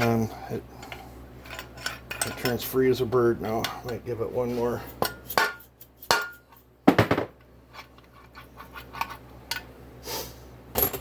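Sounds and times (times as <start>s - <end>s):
metal tools clinking: 0.8s - 2.8s.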